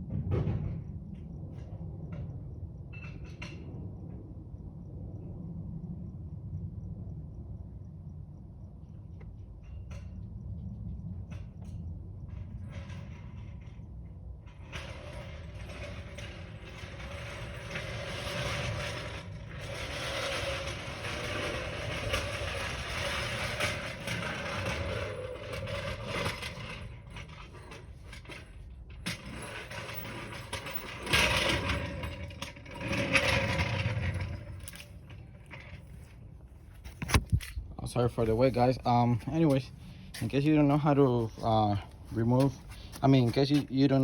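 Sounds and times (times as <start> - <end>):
tools ratcheting and creaking: 14.8 - 36.1.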